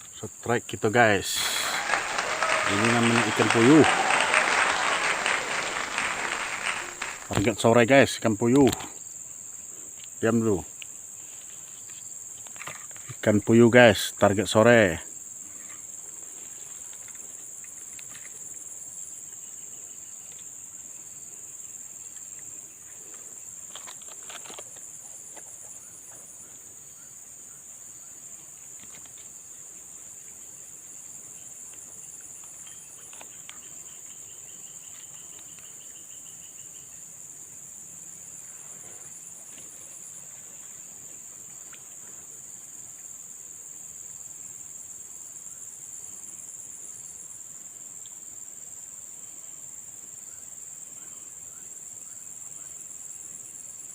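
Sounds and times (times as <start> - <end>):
faint pulsing insect trill: 0.0 - 53.9
insects droning: 0.0 - 53.9.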